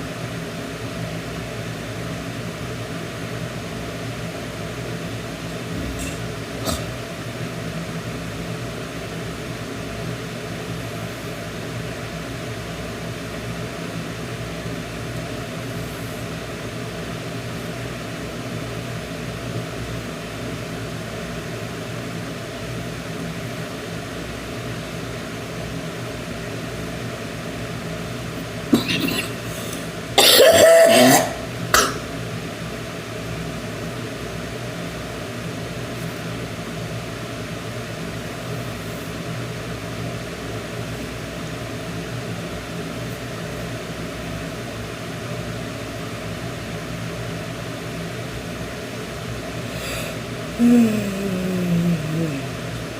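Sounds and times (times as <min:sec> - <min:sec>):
electrical hum: 0:00.0 - 0:20.3, 0:26.1 - 0:52.9
woman coughing: 0:05.8 - 0:06.9, 0:28.7 - 0:32.1.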